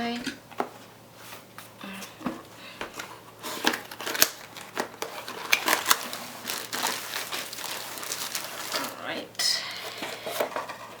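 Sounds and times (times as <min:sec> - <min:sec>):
packaging crinkling and rustling: 0:03.0 - 0:09.1.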